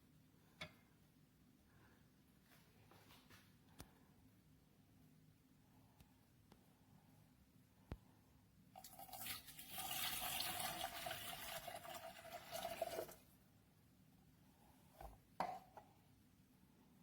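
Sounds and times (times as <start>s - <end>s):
water pouring: 8.8s - 13.3s.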